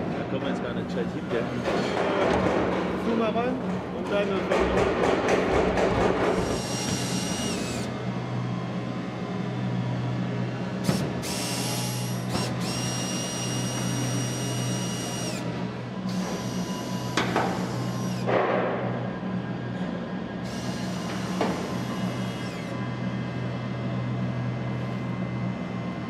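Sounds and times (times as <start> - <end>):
power tool whining: 6.2 - 8.3, 10.8 - 18.3, 20.4 - 23.0.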